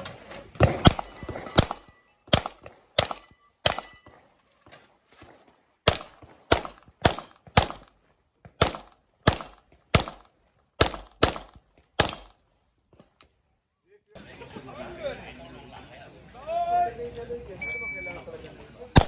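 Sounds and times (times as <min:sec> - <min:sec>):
handgun shots: 0:00.6 - 0:04.0, 0:05.9 - 0:07.9, 0:08.6 - 0:12.4.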